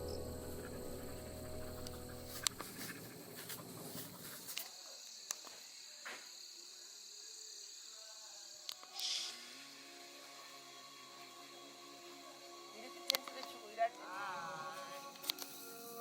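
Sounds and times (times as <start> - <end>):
background music: 0.0 - 2.8, 8.8 - 16.0
insects chirring: 0.0 - 16.0.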